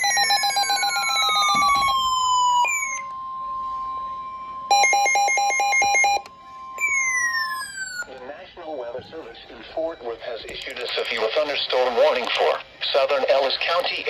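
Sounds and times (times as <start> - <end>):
rapid electronic beeping: 0.0 - 3.0
steady alarm tone: 0.0 - 8.2.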